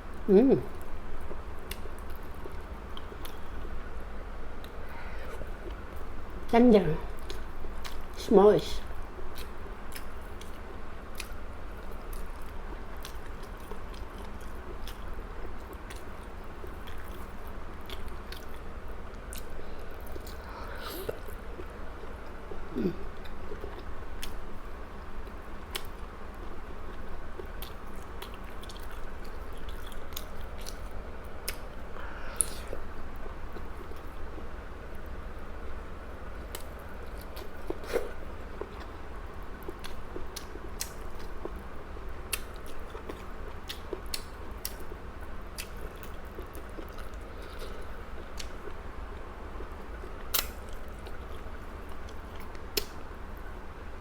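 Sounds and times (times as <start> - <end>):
person chewing food: 0.7 - 3.8, 9.2 - 24.5, 25.2 - 34.5, 36.4 - 44.9, 45.5 - 53.0
wet mouth clicks and smacks: 50.3 - 50.6.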